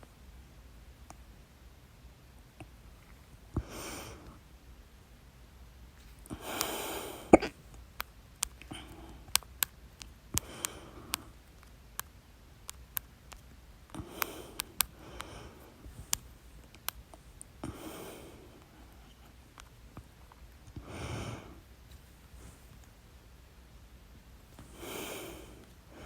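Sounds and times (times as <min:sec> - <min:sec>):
breathing: 0:06.1 - 0:07.4, 0:08.6 - 0:09.4, 0:10.4 - 0:11.4, 0:13.9 - 0:16.2, 0:17.6 - 0:19.4, 0:20.8 - 0:21.6, 0:24.6 - 0:26.0
person hiccuping: 0:07.3 - 0:07.5
faint sharp clicks: 0:07.7 - 0:17.6.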